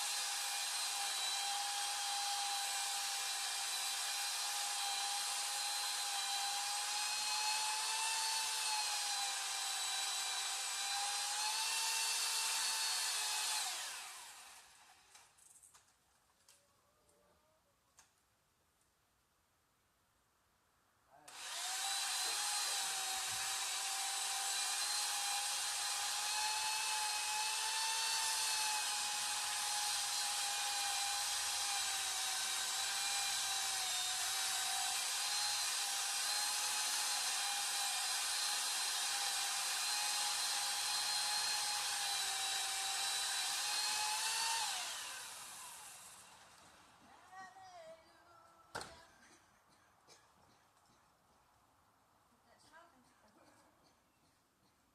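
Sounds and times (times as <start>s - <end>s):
power tool motor running: 0.0s - 15.2s, 21.3s - 46.6s.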